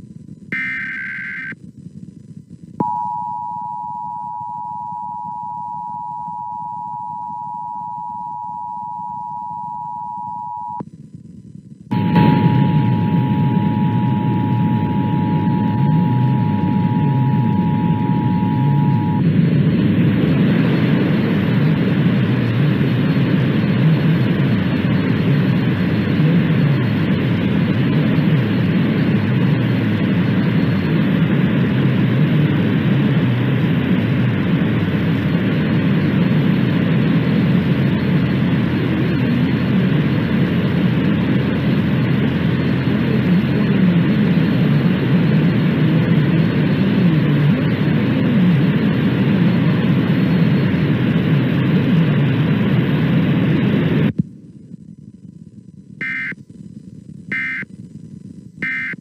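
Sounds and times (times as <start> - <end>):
rushing radio static: 0.5 - 1.6, 11.9 - 54.2, 56.0 - 56.4, 57.3 - 57.6, 58.6 - 59.0.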